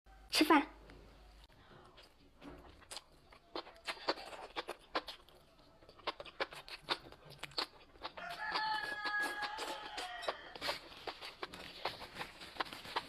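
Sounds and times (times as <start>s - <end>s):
rooster crowing: 8.2s - 10.6s.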